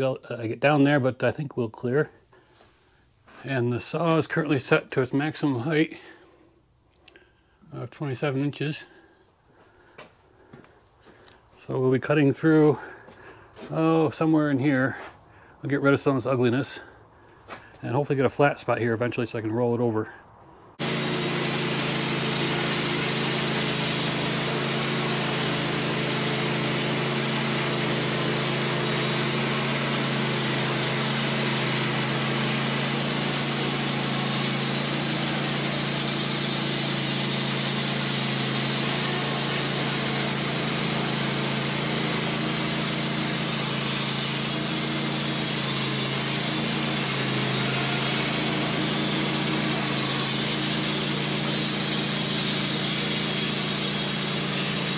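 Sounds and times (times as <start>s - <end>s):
band saw blade rasping through log: 20.8s - 54.9s
sawmill motor drone: 20.8s - 54.9s.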